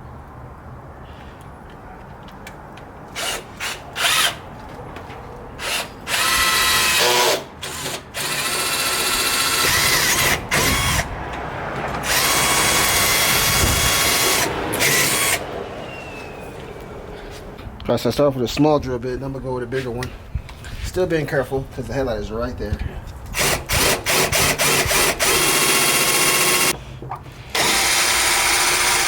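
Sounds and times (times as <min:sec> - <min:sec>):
power drill motor whining: 0:05.6 - 0:11.1, 0:12.0 - 0:16.5, 0:23.4 - 0:26.8, 0:27.5 - 0:29.0.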